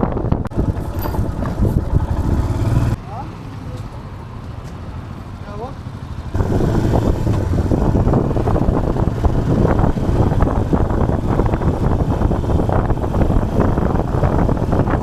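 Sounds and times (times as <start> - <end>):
wind buffeting microphone: 0.0 - 3.0, 6.3 - 15.0.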